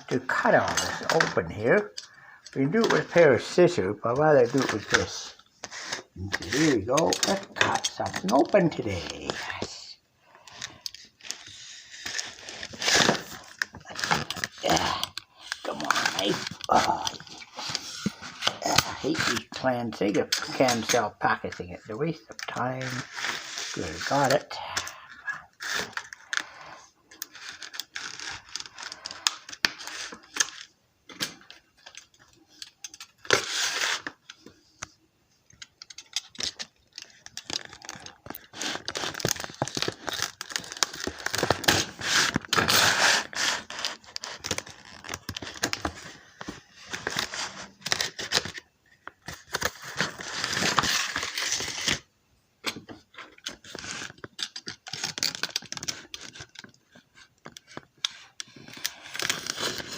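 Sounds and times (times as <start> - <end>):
plastic crackling and tearing: 0.1 - 59.9
knife cutting plastic packaging: 5.7 - 9.1, 11.2 - 19.5, 35.8 - 46.1, 53.4 - 59.9.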